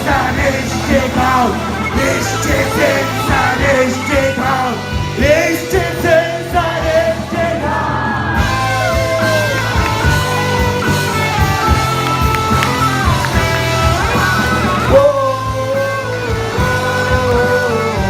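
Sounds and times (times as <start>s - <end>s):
person singing: 0.0s - 8.0s, 14.9s - 18.0s
rock band playing: 0.0s - 18.0s.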